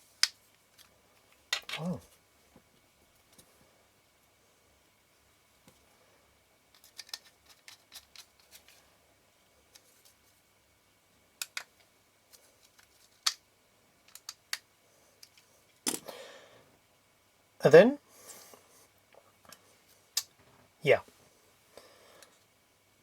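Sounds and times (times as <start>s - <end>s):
metal parts clicking and tapping: 1.5s - 1.8s, 6.7s - 8.6s, 14.1s - 14.6s.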